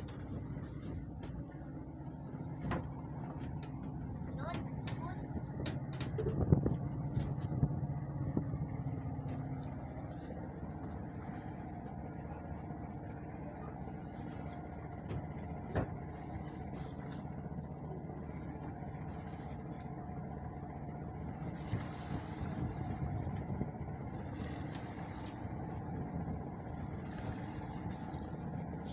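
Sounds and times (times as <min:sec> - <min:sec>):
boat motor droning: 0:00.0 - 0:28.9.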